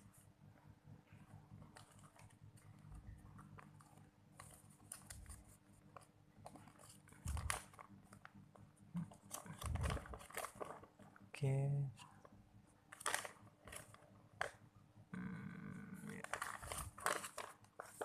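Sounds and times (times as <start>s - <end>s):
packaging rustling: 6.5s - 7.9s, 9.1s - 11.0s, 12.9s - 14.0s, 16.2s - 18.0s.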